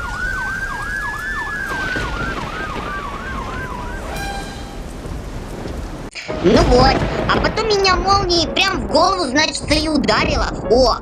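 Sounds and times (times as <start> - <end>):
rising and falling long tone: 4.0 - 5.1.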